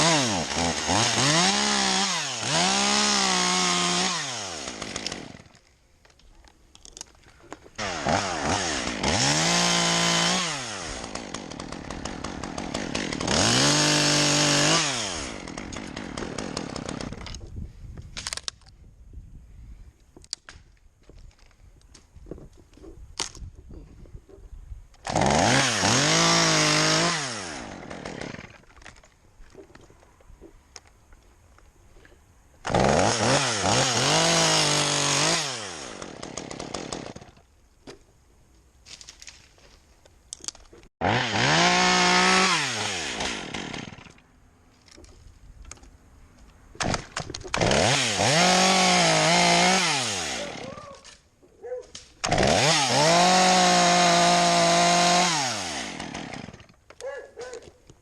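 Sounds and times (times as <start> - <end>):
chainsaw revving: 0.0 - 5.6, 7.8 - 17.2, 25.1 - 28.6, 32.6 - 37.3, 41.0 - 44.2, 47.5 - 50.8, 52.2 - 56.7.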